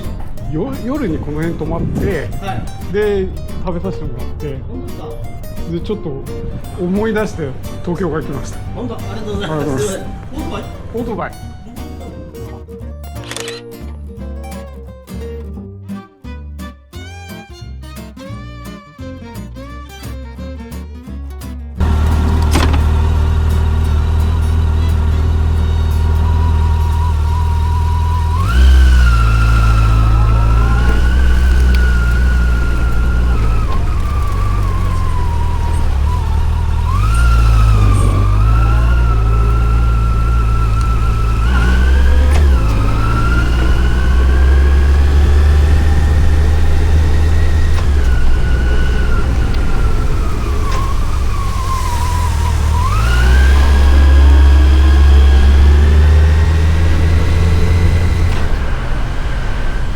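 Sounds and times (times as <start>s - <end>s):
motorcycle engine revving: 0.0s - 5.8s, 21.8s - 59.9s.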